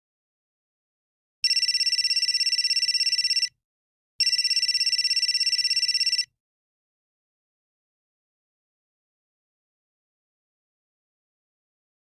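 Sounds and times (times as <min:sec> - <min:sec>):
cell phone ringing: 0:01.4 - 0:03.6, 0:04.2 - 0:06.3.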